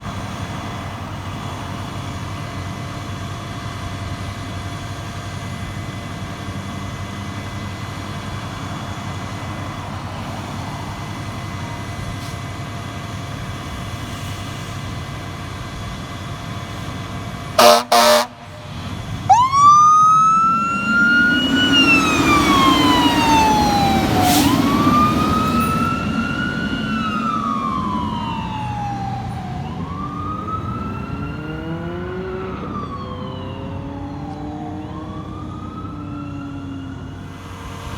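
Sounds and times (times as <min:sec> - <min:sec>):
fire engine idling: 0:00.0 - 0:37.9
air horn blasts: 0:17.6 - 0:18.7
siren winding up and down: 0:19.3 - 0:37.5.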